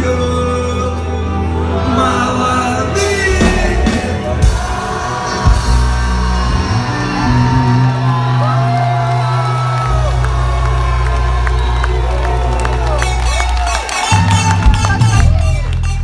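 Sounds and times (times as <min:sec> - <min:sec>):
loud rock pop song: 0:00.0 - 0:10.9
young voices singing and shouting: 0:01.4 - 0:08.5.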